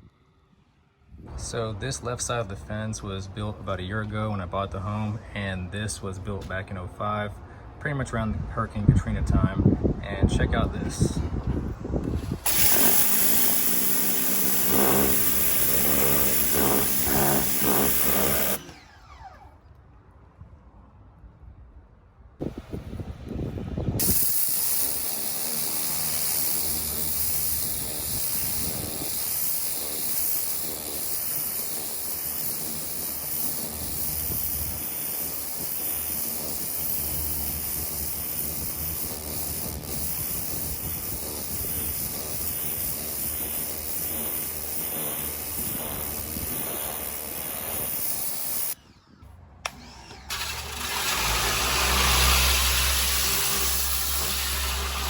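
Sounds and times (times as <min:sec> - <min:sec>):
pressure washer jet hissing: 0:12.2 - 0:19.2, 0:24.0 - 0:48.9, 0:49.7 - 0:55.0
pump humming: 0:12.4 - 0:19.6, 0:24.0 - 0:55.0.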